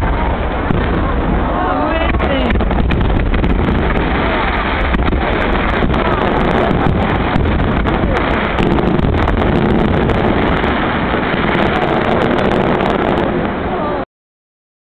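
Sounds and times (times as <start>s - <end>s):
fireworks crackling and popping: 0.0s - 14.0s
wind buffeting microphone: 0.0s - 14.0s
heavy low rumble: 0.0s - 14.1s.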